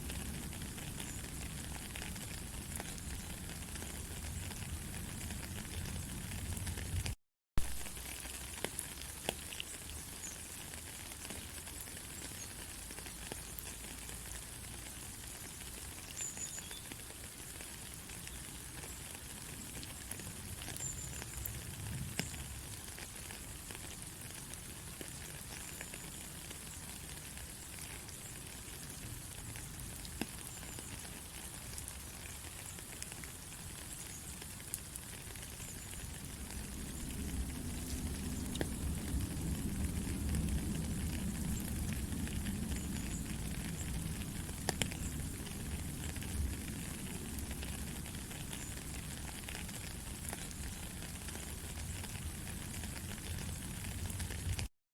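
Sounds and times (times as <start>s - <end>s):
raindrop ticks: 0.0s - 54.7s
steady rain hiss: 0.0s - 54.7s.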